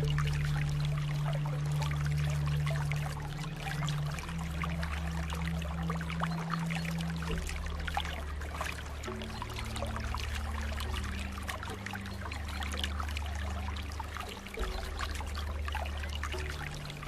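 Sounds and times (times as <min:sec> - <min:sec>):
water trickling and splashing: 0:00.0 - 0:17.0.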